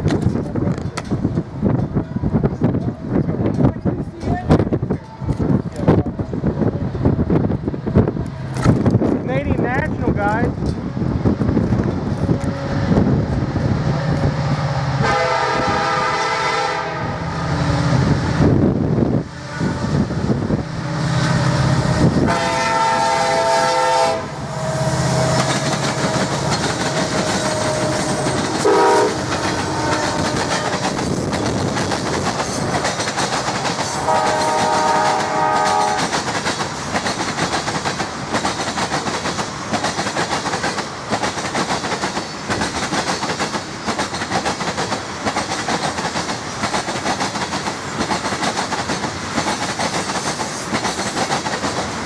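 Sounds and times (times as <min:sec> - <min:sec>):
train cars rumbling: 0:00.0 - 0:52.0
train horn blasts: 0:15.0 - 0:18.0, 0:19.3 - 0:30.8, 0:33.9 - 0:36.1
wheels clacking over rail joints: 0:25.0 - 0:52.0.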